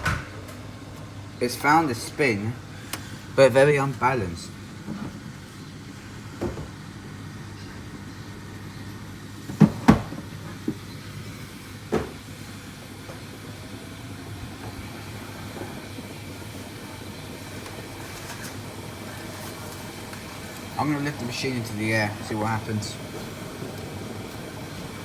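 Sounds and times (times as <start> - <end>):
washing machine drum spinning: 9.2 - 25.0.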